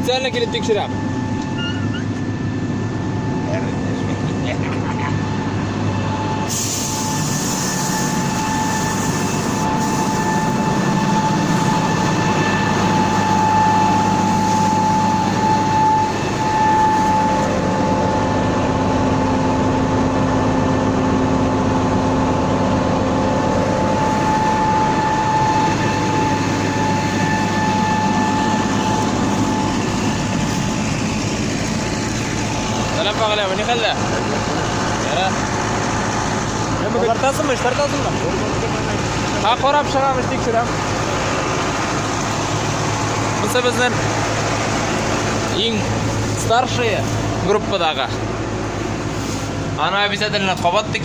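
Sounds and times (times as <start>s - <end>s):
combine harvester running: 0.0s - 51.0s
whining drive tones: 0.0s - 51.0s.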